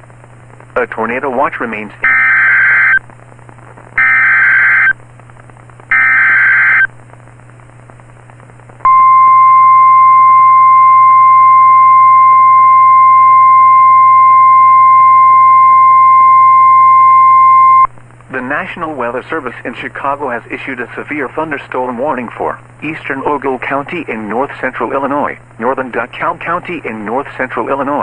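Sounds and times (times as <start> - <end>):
steady warning alarm tone: 2.0 - 3.0, 4.0 - 4.9, 5.9 - 6.9
buzzy digital data bursts: 4.0 - 4.9, 5.9 - 6.9.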